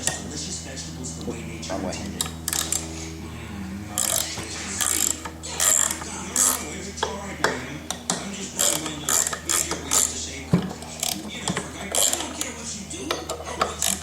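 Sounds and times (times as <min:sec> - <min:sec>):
hand ratchet clicking: 0:02.0 - 0:03.0, 0:04.0 - 0:14.0.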